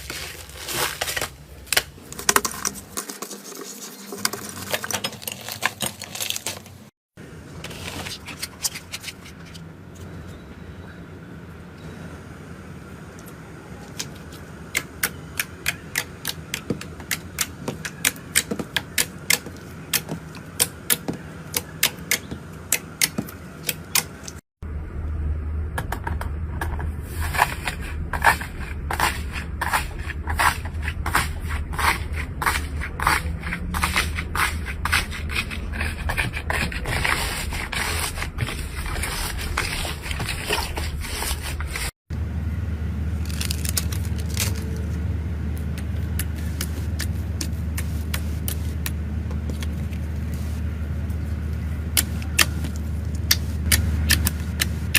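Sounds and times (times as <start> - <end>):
low hum: 24.6 - 54.9.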